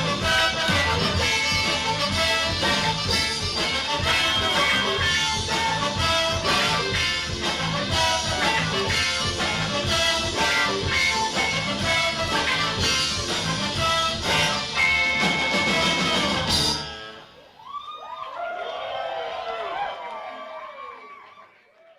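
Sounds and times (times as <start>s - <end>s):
band playing music: 0.0s - 17.3s.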